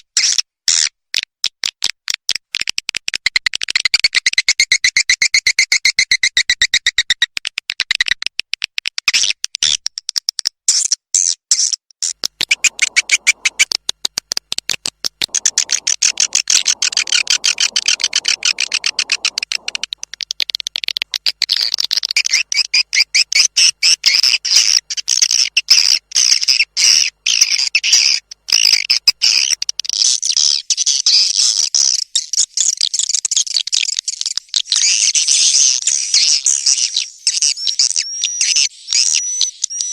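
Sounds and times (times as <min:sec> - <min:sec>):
high-pitched bird chirps: 0:12.5 - 0:13.7, 0:15.3 - 0:20.1.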